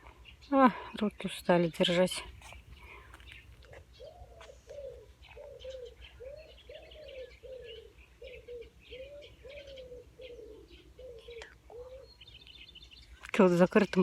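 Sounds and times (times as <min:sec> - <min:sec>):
small birds chirping: 0:00.0 - 0:14.0
pigeon hoarse calls: 0:02.4 - 0:12.2.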